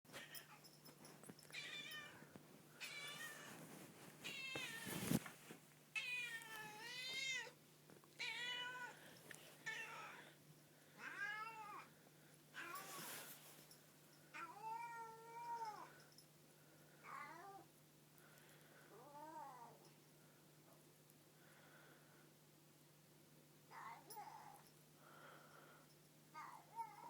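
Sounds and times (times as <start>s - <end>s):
cat meowing: 1.5s - 2.2s, 4.2s - 5.0s, 6.0s - 7.6s, 8.2s - 9.0s, 11.0s - 11.9s.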